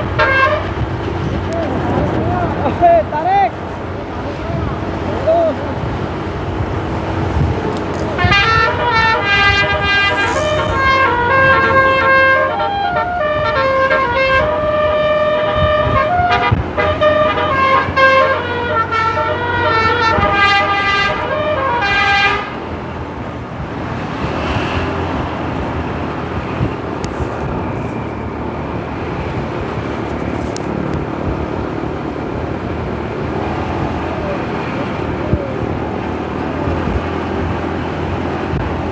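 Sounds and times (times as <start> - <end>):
musical air horn tune: 0.0 - 0.9, 8.2 - 22.9
road and engine noise: 0.0 - 38.9.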